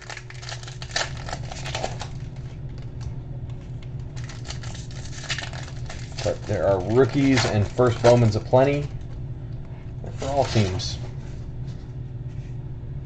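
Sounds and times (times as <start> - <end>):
cards and wrappers crinkling: 0.0 - 8.9, 10.1 - 11.0
steady low hum: 0.0 - 13.0.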